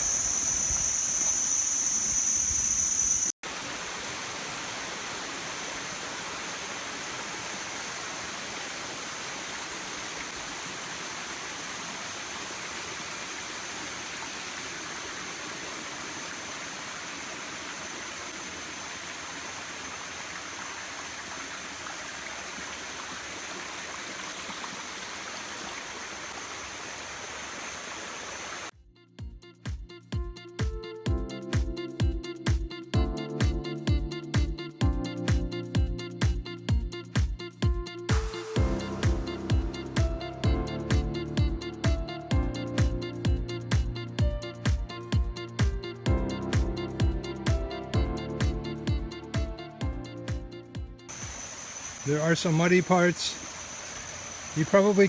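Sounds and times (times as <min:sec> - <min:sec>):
high insect drone: 0:00.0 - 0:03.3, 0:11.1 - 0:22.3, 0:30.4 - 0:55.0
stream flowing: 0:03.4 - 0:28.7, 0:51.0 - 0:55.0.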